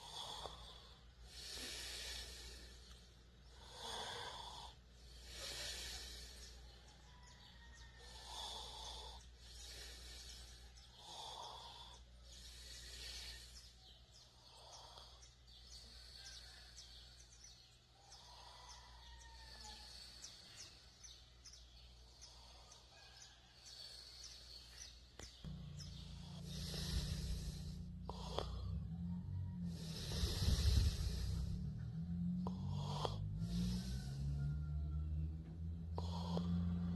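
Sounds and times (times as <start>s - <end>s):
person snoring: 0.0s - 13.7s, 25.5s - 36.9s
person breathing in sleep: 0.0s - 36.9s.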